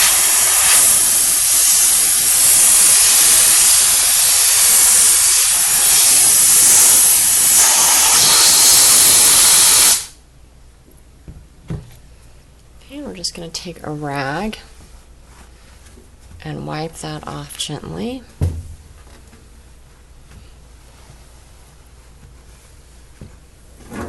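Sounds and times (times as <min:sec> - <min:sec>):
steam cleaner hissing: 0:00.0 - 0:10.2.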